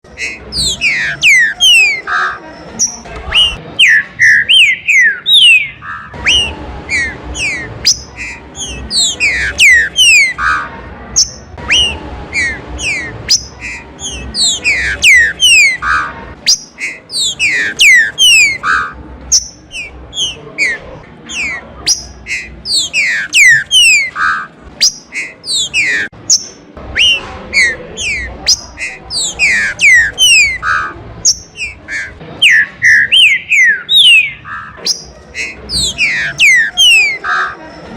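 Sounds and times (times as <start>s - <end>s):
birds whistling song: 0.1s - 37.6s
low rumbling noise: 5.6s - 16.5s.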